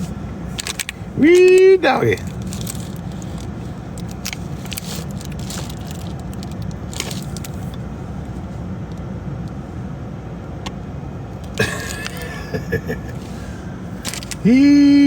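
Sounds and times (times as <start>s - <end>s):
car rumbling: 0.0s - 15.0s
small clicks and crackles: 0.6s - 1.0s, 2.2s - 7.8s
crinkling crackle: 2.2s - 7.8s.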